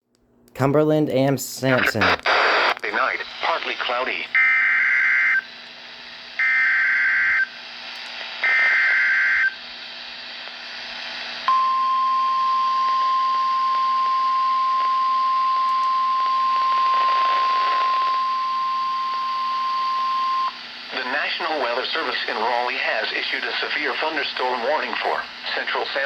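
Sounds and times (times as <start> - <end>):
faint radio hiss: 0.5 - 11.5, 16.6 - 18.2, 18.8 - 26.0.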